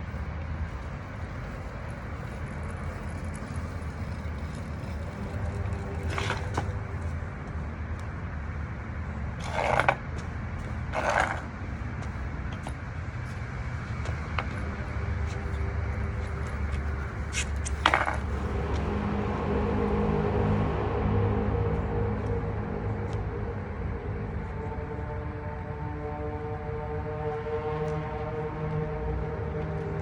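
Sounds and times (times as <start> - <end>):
low rumbling hum: 0.0 - 30.0
scraping or clinking noises: 3.0 - 7.1, 9.4 - 10.0, 10.9 - 11.5, 16.1 - 18.8.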